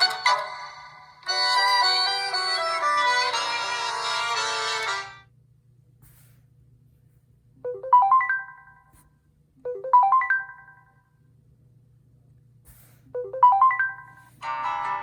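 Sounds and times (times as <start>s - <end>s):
chiming phone ringtone: 7.7s - 8.9s, 9.7s - 11.1s, 13.2s - 15.0s
plucked-string ringtone: 13.2s - 15.0s.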